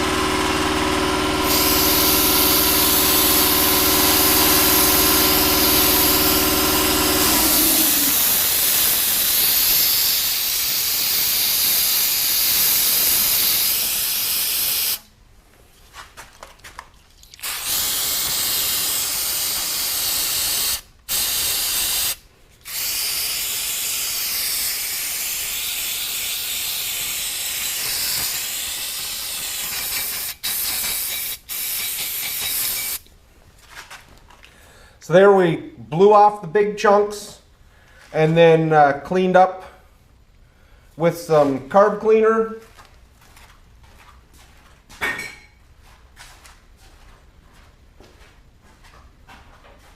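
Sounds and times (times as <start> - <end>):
machine hum: 0.0 - 8.7
air blow gun hissing: 1.3 - 15.1, 17.4 - 33.0.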